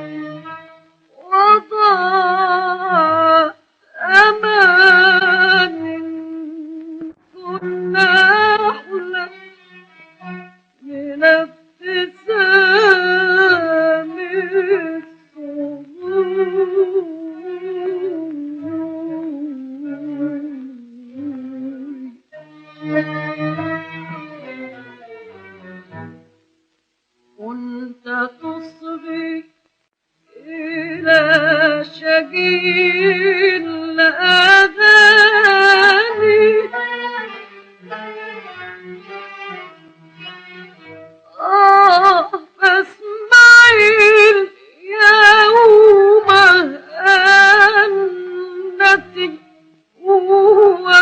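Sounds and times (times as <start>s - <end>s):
woman singing with vibrato: 1.1s - 9.5s, 10.8s - 22.3s, 27.4s - 29.6s, 30.3s - 38.0s, 41.3s - 51.0s.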